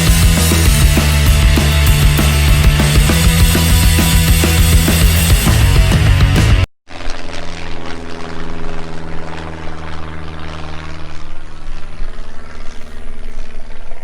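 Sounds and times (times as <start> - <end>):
engine running steadily: 0.0 - 6.6.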